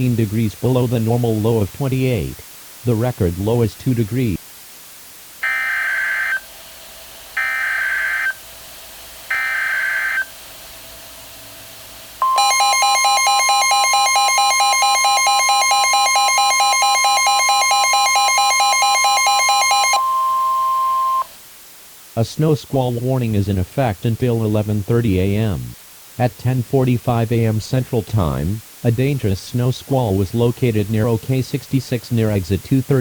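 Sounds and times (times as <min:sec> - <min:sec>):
long steady attention tone: 0:07.3 - 0:08.4, 0:09.2 - 0:10.4, 0:12.2 - 0:21.4.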